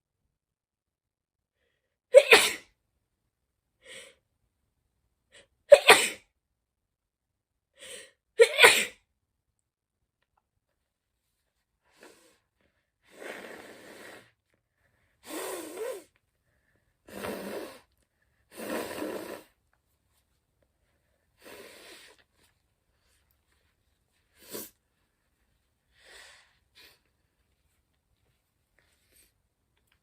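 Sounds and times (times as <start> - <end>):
person blowing nose: 13.0 - 14.4, 15.2 - 16.2, 17.1 - 17.9, 18.5 - 19.6, 21.4 - 22.2, 24.3 - 24.8.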